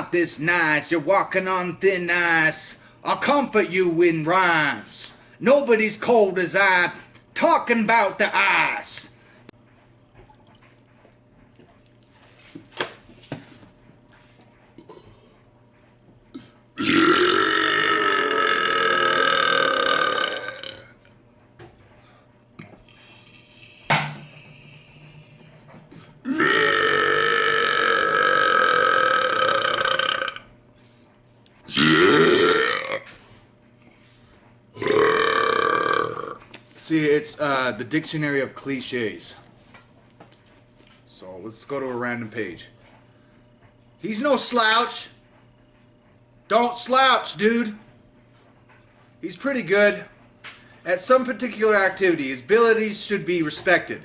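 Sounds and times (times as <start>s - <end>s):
man belching: 16.8s - 21.0s, 26.2s - 30.5s, 31.7s - 33.1s, 34.8s - 36.4s.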